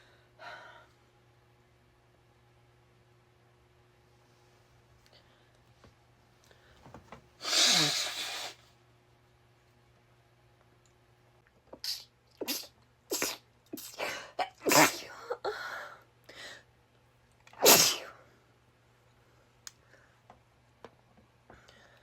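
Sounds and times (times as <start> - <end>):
woman sneezing: 11.8 - 15.4, 17.6 - 18.1.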